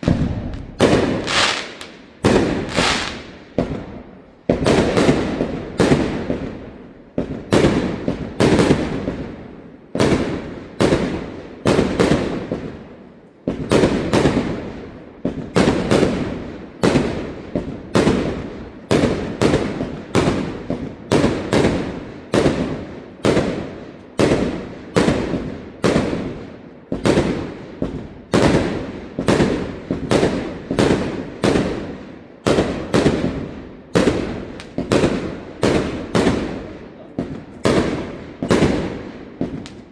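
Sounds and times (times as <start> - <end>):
fireworks bursting with echo: 0.0 - 39.9.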